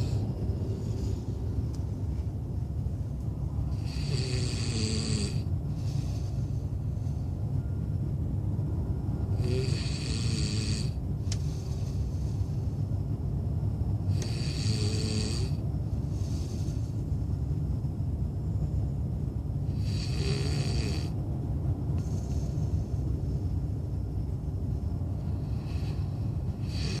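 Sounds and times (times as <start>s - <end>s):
man snoring: 0.0s - 0.2s, 3.7s - 6.3s, 9.3s - 12.3s, 14.0s - 16.8s, 19.7s - 21.2s, 25.4s - 27.0s
faint breaths: 0.0s - 17.9s, 19.6s - 27.0s
steady low rumble: 0.0s - 27.0s.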